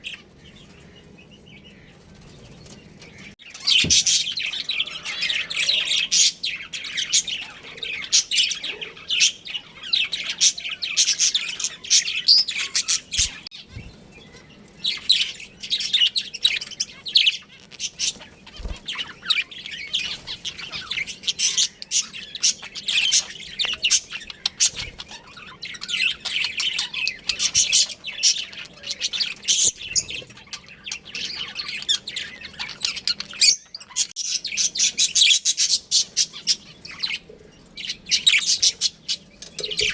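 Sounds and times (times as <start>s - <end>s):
budgerigars chirping: 0.0s - 39.9s.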